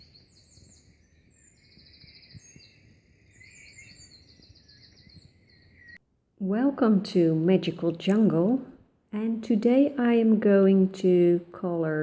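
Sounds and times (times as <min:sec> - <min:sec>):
birds chirping and trilling: 0:00.0 - 0:06.0.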